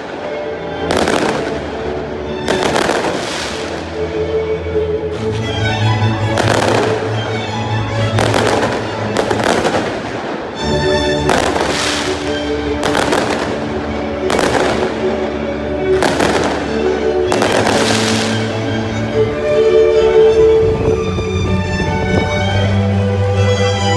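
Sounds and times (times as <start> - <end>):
music with sustained tones: 0.0 - 23.9
fireworks booming: 11.2 - 13.7.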